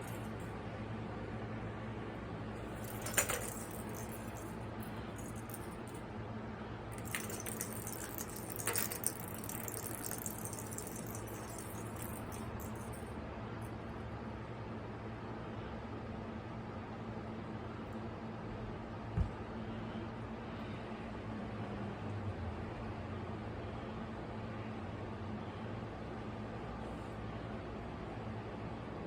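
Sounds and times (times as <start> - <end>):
cat toy rattling: 0.0 - 0.5, 2.6 - 6.0, 6.9 - 13.1
steady low hum: 0.0 - 15.8.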